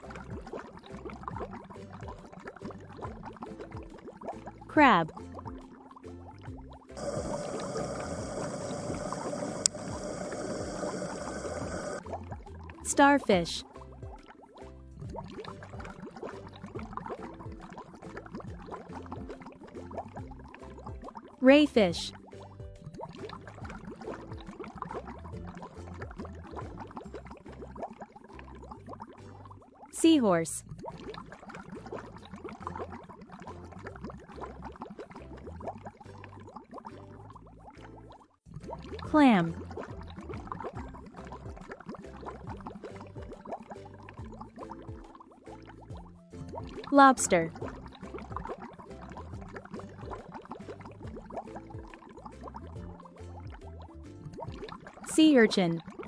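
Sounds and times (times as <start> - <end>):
water bubbling and gurgling: 0.0 - 56.0.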